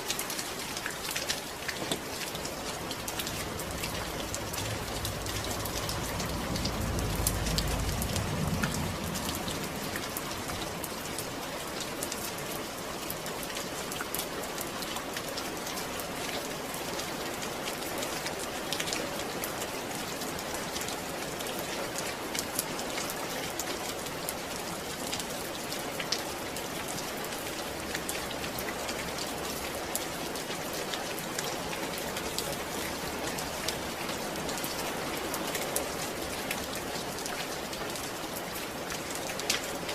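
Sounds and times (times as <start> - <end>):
steady rain falling: 0.0 - 39.9
low rumble: 2.6 - 11.1.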